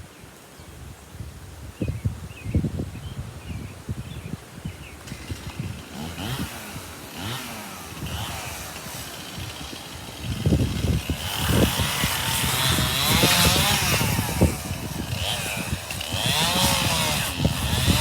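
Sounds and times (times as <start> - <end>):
chainsaw engine revving: 4.9 - 18.0.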